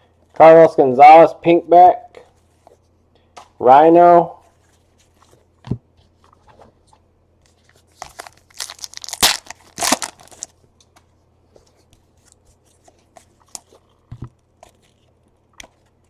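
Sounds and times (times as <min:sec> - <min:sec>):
wrapper tearing and crinkling: 0:08.0 - 0:10.6.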